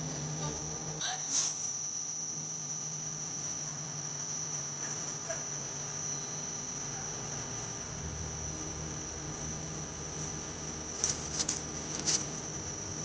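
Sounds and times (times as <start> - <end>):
crickets trilling: 0.0 - 13.0
low hum: 5.8 - 13.0.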